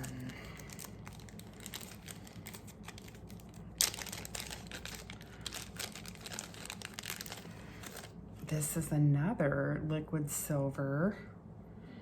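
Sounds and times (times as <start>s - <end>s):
packaging rustling and crinkling: 0.0s - 8.2s.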